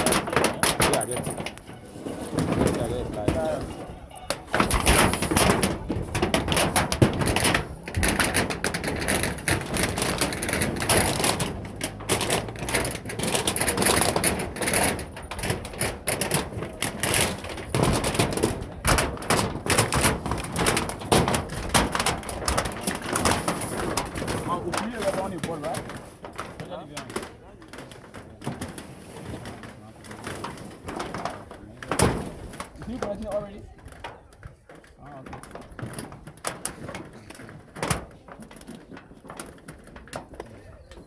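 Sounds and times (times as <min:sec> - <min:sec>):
scattered knocks: 0:00.0 - 0:28.8
rapid irregular clicking and clattering: 0:00.0 - 0:41.0.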